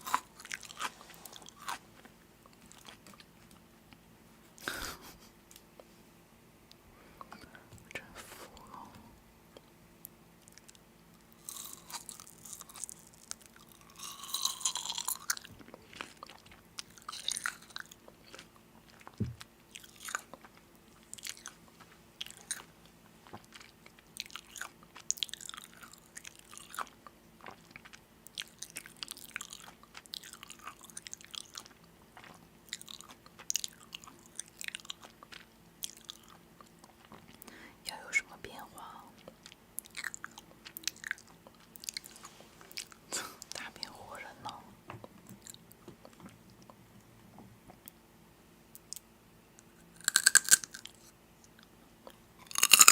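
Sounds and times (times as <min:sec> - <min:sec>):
person chewing crunchy food: 0:00.0 - 0:03.7, 0:10.4 - 0:37.5, 0:38.8 - 0:46.8, 0:49.7 - 0:52.9.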